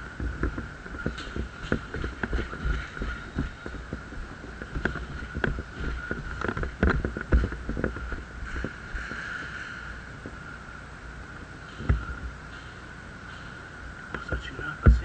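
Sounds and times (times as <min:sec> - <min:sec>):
steady high-pitched hum: 0:00.0 - 0:15.0
irregular knocks and clicks: 0:00.2 - 0:09.6.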